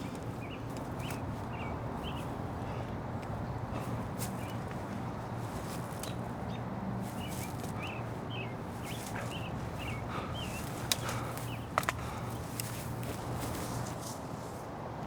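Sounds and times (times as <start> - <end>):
steady low hum: 0.0 - 15.0
small bird chirping: 4.2 - 13.1.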